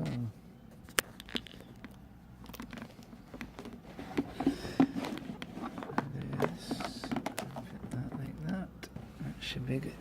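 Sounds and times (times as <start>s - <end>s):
objects clicking on workbench: 0.9s - 8.3s.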